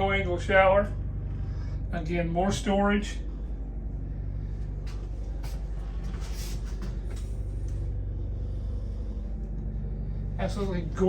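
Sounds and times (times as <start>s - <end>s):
low mechanical rumble: 0.0s - 11.0s.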